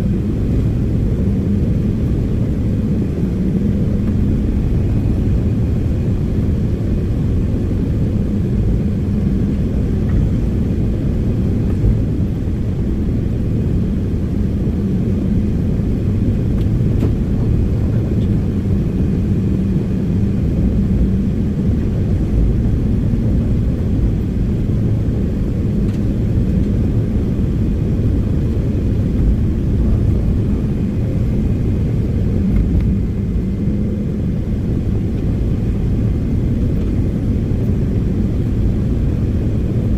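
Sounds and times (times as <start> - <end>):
diesel machinery engine drone: 0.0 - 39.9.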